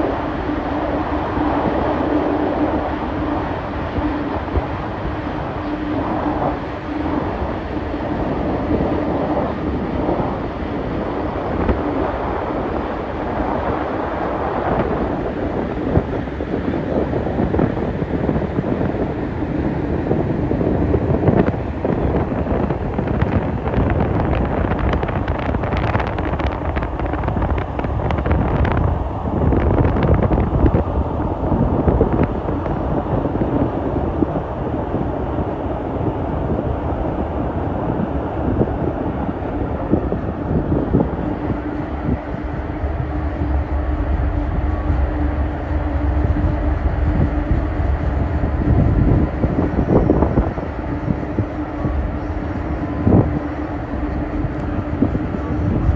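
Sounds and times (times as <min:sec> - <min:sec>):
wind buffeting microphone: 0:00.0 - 0:55.9
ferry running noise: 0:38.4 - 0:55.9.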